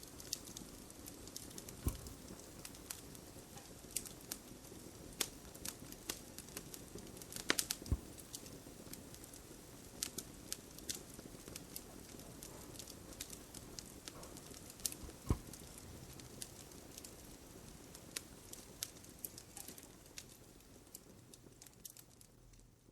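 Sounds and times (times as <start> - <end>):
wood fire crackling: 0.0 - 22.9.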